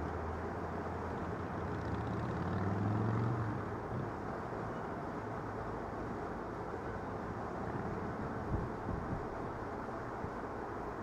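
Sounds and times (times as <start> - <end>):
urban traffic hum: 0.0 - 11.0
vehicle engine passing: 1.4 - 3.8.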